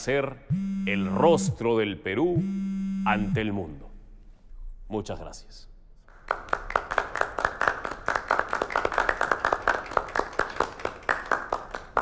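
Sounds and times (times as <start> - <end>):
people applauding: 6.1 - 12.0.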